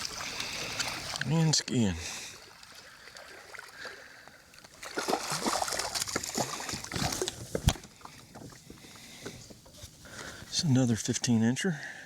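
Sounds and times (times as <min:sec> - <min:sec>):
fish splashing in water: 0:02.4 - 0:08.2.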